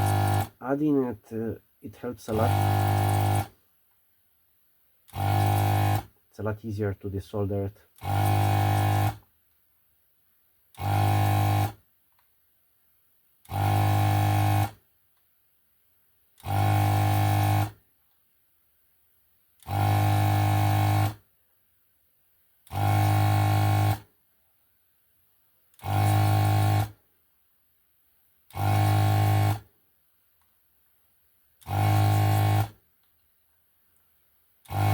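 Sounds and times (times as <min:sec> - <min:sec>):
desoldering vacuum pump buzzing: 0:00.0 - 0:00.6, 0:02.2 - 0:03.5, 0:05.1 - 0:06.1, 0:08.0 - 0:09.2, 0:10.8 - 0:11.8, 0:13.5 - 0:14.8, 0:16.4 - 0:17.8, 0:19.6 - 0:21.2, 0:22.7 - 0:24.0, 0:25.8 - 0:26.9, 0:28.5 - 0:29.6, 0:31.6 - 0:32.8, 0:34.7 - 0:34.9.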